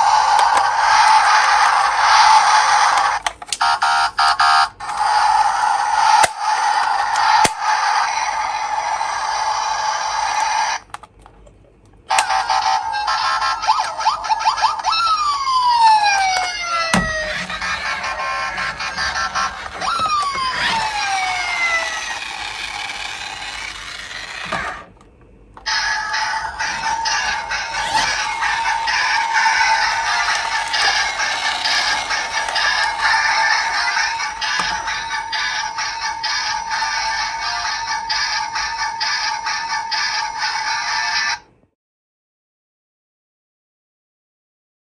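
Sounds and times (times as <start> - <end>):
toy electronic falling tones: 0.0 - 10.8, 12.1 - 24.9, 25.6 - 41.2
clicks: 6.0 - 6.5, 15.6 - 36.8.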